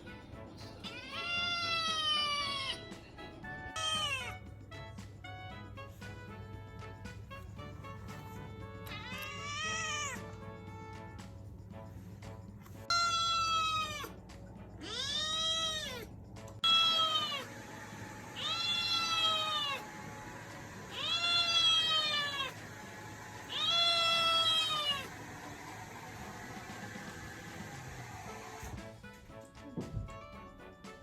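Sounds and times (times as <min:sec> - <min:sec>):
kitten meowing: 0:00.8 - 0:02.9, 0:03.7 - 0:04.4, 0:08.8 - 0:10.3, 0:12.9 - 0:14.2, 0:14.8 - 0:17.5, 0:18.4 - 0:19.8, 0:20.9 - 0:22.6, 0:23.5 - 0:25.1.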